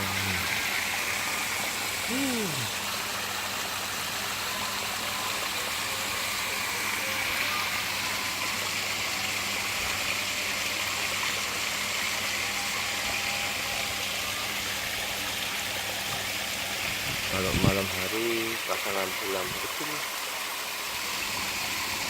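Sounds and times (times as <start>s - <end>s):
waterfall pouring into pool: 0.0s - 22.0s.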